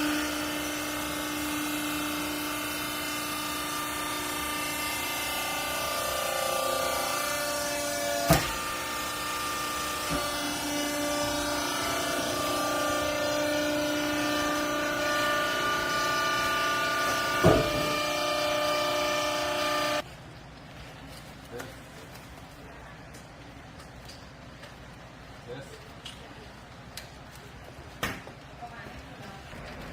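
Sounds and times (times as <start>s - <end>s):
hydraulic pump motor whine: 0.0s - 20.0s.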